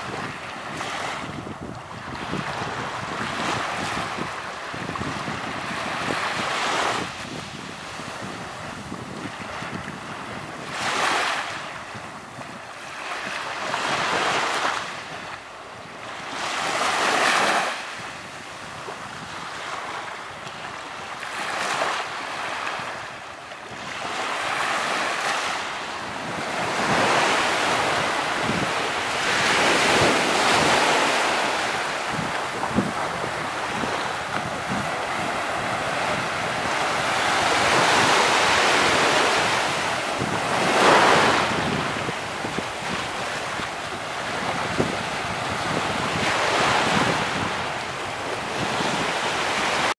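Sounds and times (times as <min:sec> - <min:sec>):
ocean waves breaking: 0:00.0 - 0:49.9.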